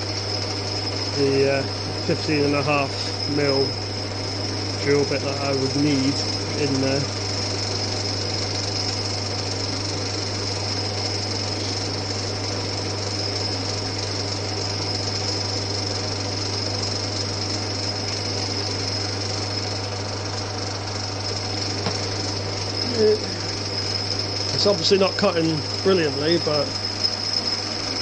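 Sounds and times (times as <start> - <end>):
drill bit cutting metal: 0.0 - 28.0
metal lathe running: 0.0 - 28.0.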